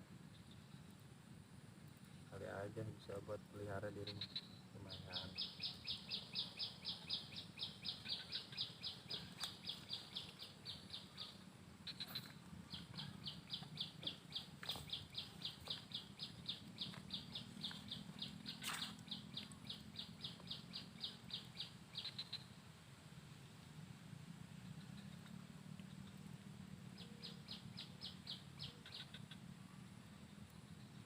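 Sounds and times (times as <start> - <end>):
bird chirping rapidly: 4.0 - 22.6, 27.0 - 29.4.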